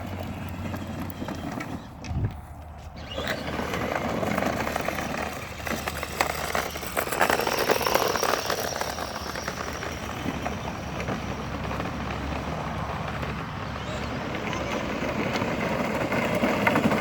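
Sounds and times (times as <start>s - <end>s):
toy car electric motors whirring: 0.0s - 17.0s
tyres rolling: 0.0s - 17.0s
faint high whine: 5.8s - 11.1s.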